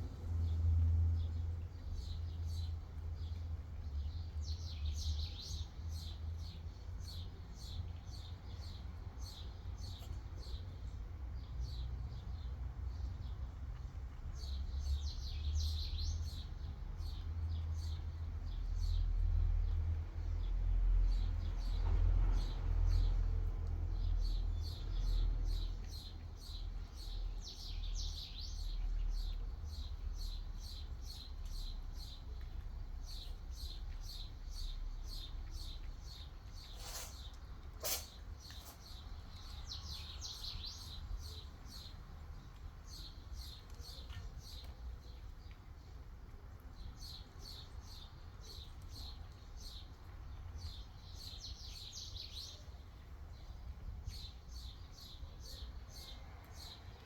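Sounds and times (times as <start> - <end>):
small birds chirping: 0.1 - 57.0
sharp short snaps: 36.7 - 38.8.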